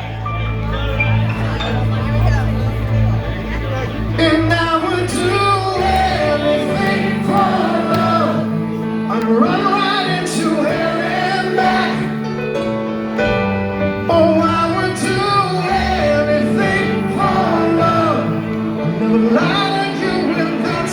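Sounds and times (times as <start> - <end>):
live rock band playing: 0.6 - 20.9
person singing: 4.2 - 12.3, 14.0 - 20.9.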